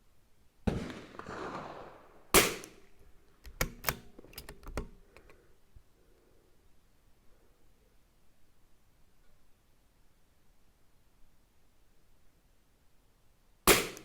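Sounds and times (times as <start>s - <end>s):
rifle shot crack: 0.7s - 3.0s, 13.7s - 14.0s
rifle bolt clicks: 2.4s - 2.8s, 3.4s - 5.4s, 13.7s - 14.0s.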